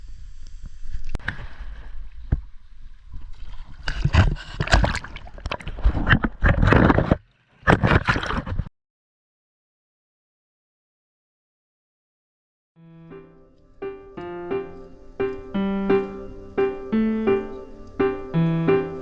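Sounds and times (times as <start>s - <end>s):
sea water sloshing and gurgling: 1.3s - 8.7s.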